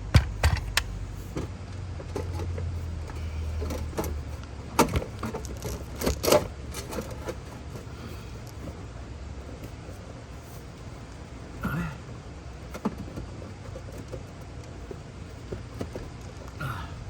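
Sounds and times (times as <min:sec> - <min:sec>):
metal knocks and clatter: 0:00.0 - 0:00.9
low steady hum: 0:00.0 - 0:17.0.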